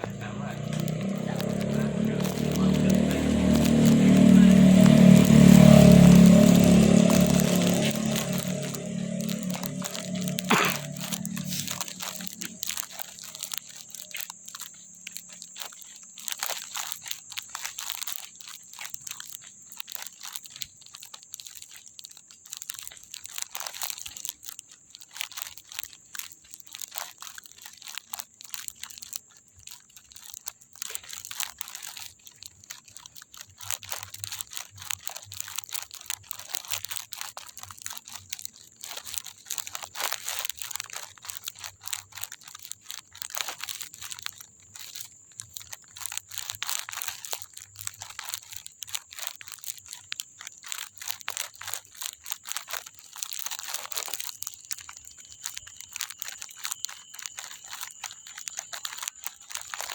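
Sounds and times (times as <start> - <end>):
crunching and crackling clicks: 0.0 - 59.9
high-pitched whine: 1.5 - 13.4.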